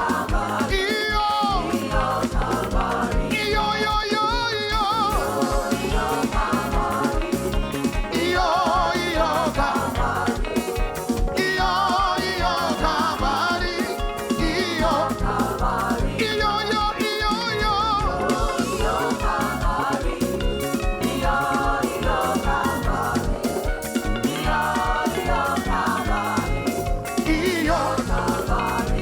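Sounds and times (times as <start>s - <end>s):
upbeat gospel music: 0.0s - 29.0s.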